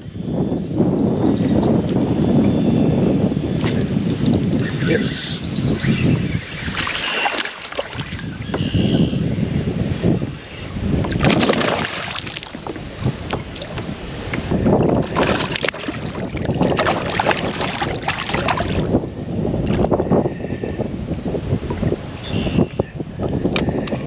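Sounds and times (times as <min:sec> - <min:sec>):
water splashing around kayak: 0:06.5 - 0:08.7, 0:10.9 - 0:19.9.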